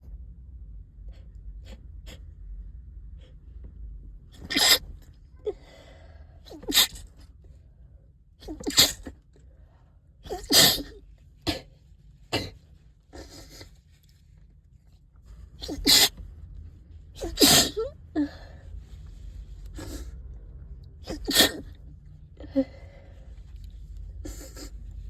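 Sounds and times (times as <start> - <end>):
person sneezing: 4.4 - 5.5, 6.5 - 7.1, 8.4 - 9.1, 10.3 - 12.6, 15.6 - 16.2, 17.2 - 18.3, 21.1 - 21.8.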